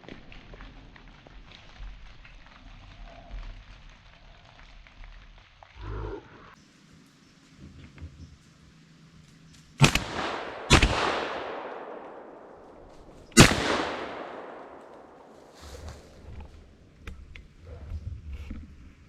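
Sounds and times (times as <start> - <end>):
shotgun shots echoing: 9.8 - 15.6.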